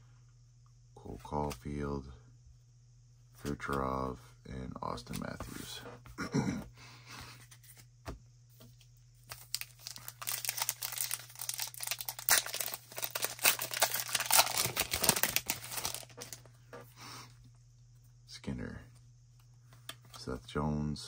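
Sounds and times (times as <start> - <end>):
wrapper tearing and crinkling: 9.3 - 16.4.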